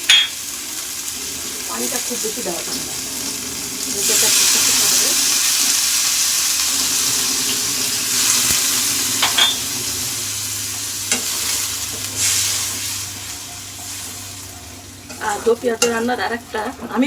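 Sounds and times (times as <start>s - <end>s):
masala sizzling in a frying pan: 0.0s - 17.0s
spoon clicking against pan: 15.8s - 16.1s.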